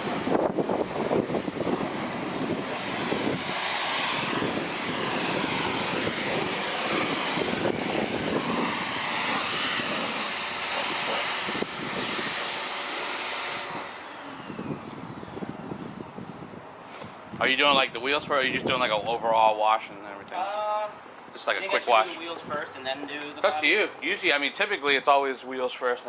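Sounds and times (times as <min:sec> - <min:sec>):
pressure washer spraying: 0:00.0 - 0:14.0.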